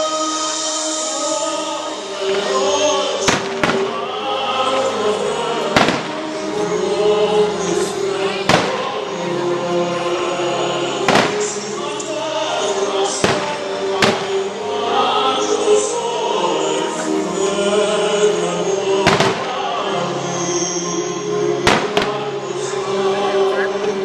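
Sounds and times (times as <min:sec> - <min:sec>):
music with choir-like voices: 0:00.0 - 0:24.0
fireworks bangs: 0:03.2 - 0:04.2, 0:05.7 - 0:06.6, 0:08.4 - 0:09.2, 0:11.0 - 0:12.2, 0:13.0 - 0:14.7, 0:19.0 - 0:20.0, 0:21.6 - 0:22.5.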